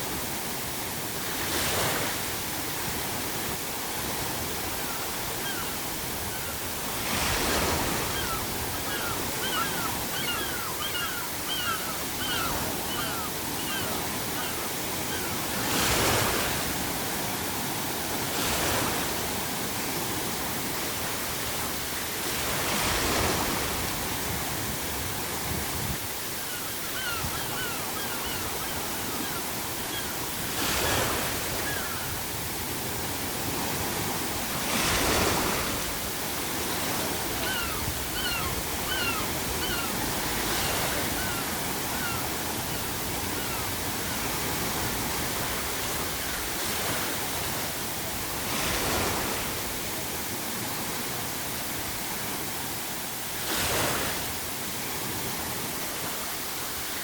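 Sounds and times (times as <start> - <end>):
waves breaking on shore: 0.0 - 57.0
gulls calling: 4.5 - 16.9, 26.1 - 32.4, 36.5 - 46.4.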